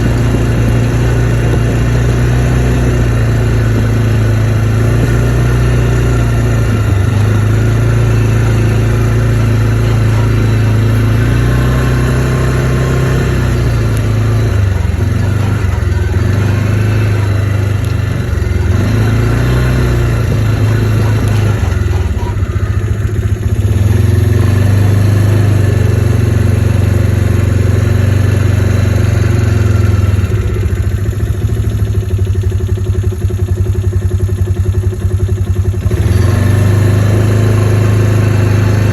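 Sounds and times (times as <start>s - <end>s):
atv engine revving: 0.0s - 38.9s.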